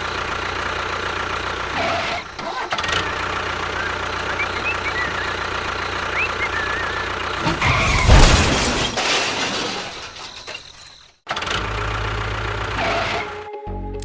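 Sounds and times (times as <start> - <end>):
small engine drone: 0.0 - 7.5
loud crashing clatter: 6.0 - 11.6.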